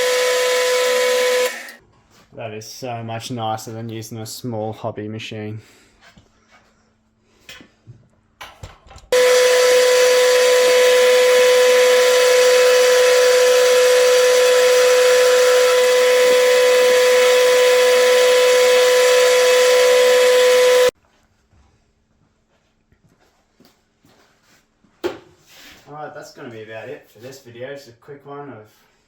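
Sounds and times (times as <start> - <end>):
metal lathe whining: 0.0 - 1.8, 9.2 - 20.9.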